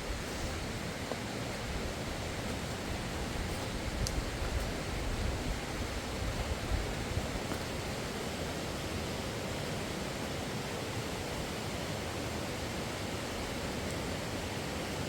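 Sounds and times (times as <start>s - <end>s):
wind rumble on microphone: 0.0s - 8.1s
fast-flowing river water rushing: 0.1s - 15.0s.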